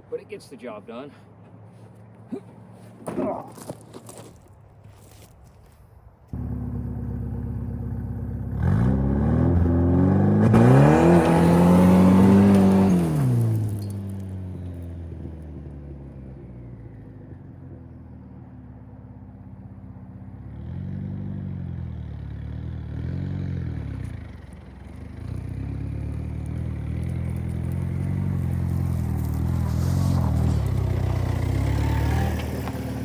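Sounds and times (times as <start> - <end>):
turbocharged engine revving: 6.4 - 13.4.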